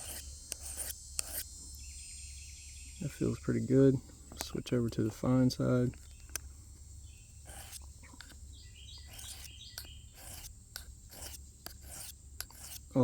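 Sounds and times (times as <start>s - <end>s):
knife scraping on diamond file: 0.0s - 1.5s, 7.4s - 8.4s, 9.0s - 13.0s
bird chirping: 0.0s - 12.0s.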